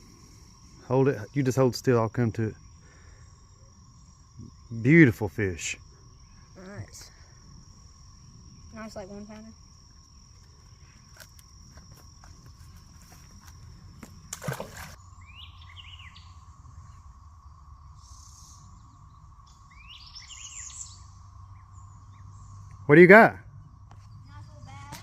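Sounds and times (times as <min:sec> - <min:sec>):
insects trilling: 0:00.0 - 0:25.0
bird chirping: 0:15.0 - 0:17.1, 0:17.9 - 0:22.9.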